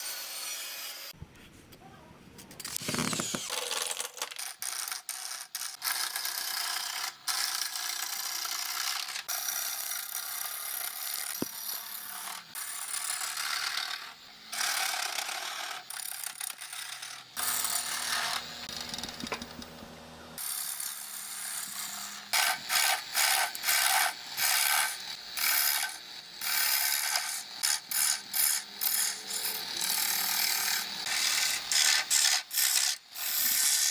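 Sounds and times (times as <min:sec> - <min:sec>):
lathe tool cutting wood: 0:16.6 - 0:31.7.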